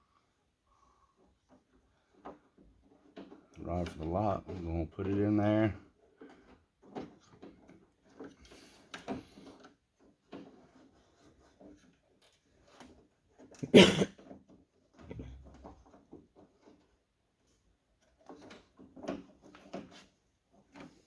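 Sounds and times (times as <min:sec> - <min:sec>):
clicks and rattles of door parts: 0:18.0 - 0:21.0.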